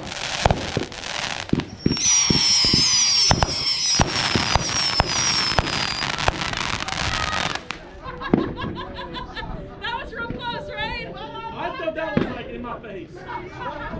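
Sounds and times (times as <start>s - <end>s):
falling firework whistle: 0.0s - 7.8s
firework hissing shower: 0.0s - 8.0s
firework bangs and pops: 0.0s - 8.4s.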